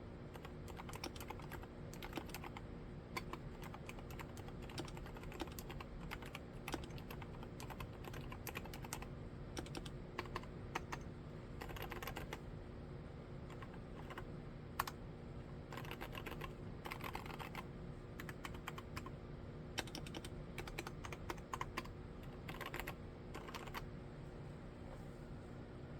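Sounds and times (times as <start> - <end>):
soft mechanical keyboard keystrokes: 0.3 - 2.6, 3.2 - 12.4, 13.4 - 15.0, 15.7 - 19.1, 19.8 - 23.9.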